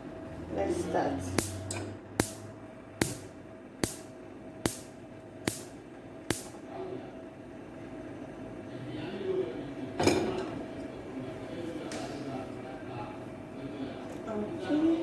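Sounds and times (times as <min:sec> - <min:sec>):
gas stove igniter clicking: 0:01.4 - 0:02.4, 0:03.0 - 0:06.6.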